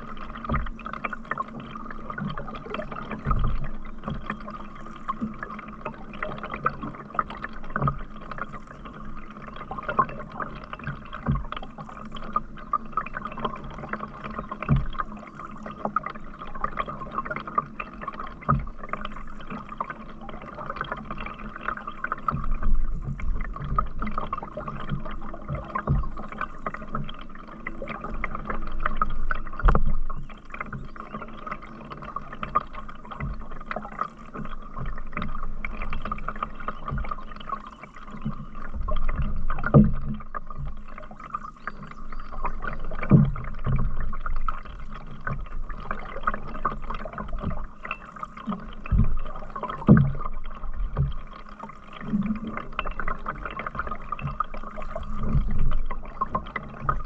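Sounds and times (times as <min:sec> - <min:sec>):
water splashing off paddle: 0:00.0 - 0:57.0
paddle knocking on canoe: 0:21.7 - 0:27.1, 0:28.3 - 0:30.8, 0:48.4 - 0:57.0.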